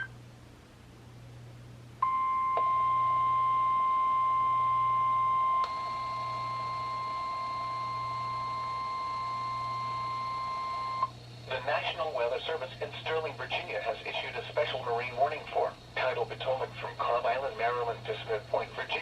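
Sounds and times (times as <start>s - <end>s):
loud steady alarm tone: 2.0s - 11.1s.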